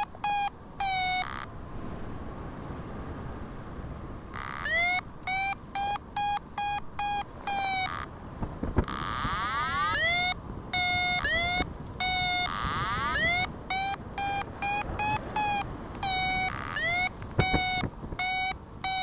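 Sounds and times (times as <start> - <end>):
variometer beeping: 0.0 - 1.5, 4.4 - 8.1, 8.8 - 19.0.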